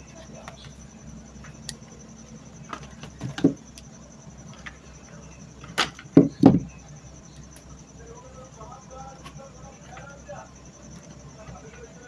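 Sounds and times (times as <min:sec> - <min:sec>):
light handling clicks: 0:00.1 - 0:02.0
handling knocks: 0:02.6 - 0:04.9, 0:05.5 - 0:06.9.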